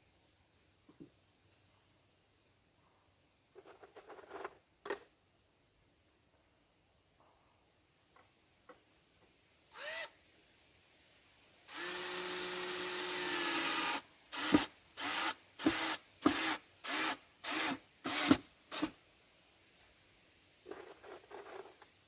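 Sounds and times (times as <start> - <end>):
power drill driving screw: 9.8 - 10.1, 11.7 - 19.0.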